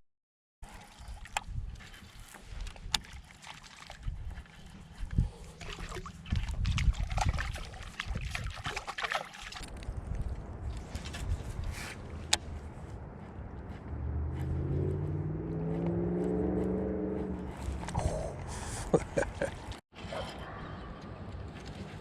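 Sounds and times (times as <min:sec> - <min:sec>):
water splashing around boat: 0:00.6 - 0:12.3.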